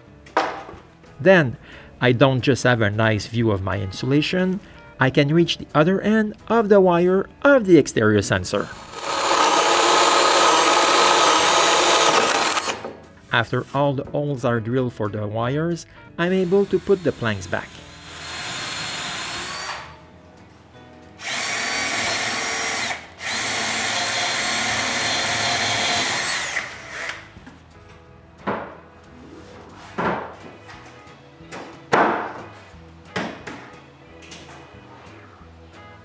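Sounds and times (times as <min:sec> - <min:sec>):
sharp knocks on wood planks: 0:00.3 - 0:00.8, 0:28.4 - 0:28.8, 0:30.0 - 0:30.6, 0:31.5 - 0:32.5, 0:33.2 - 0:33.7
power drill whining: 0:08.8 - 0:12.8, 0:18.0 - 0:19.9, 0:21.2 - 0:27.3.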